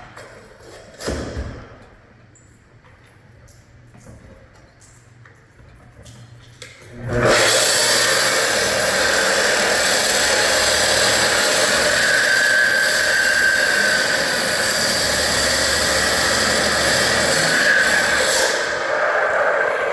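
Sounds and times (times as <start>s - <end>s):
electric saw cutting wall: 7.0s - 19.9s.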